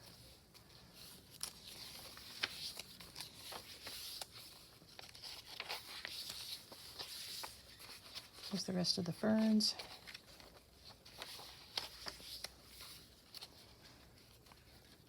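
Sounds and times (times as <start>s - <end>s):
paper pages rustling: 0.0s - 15.0s.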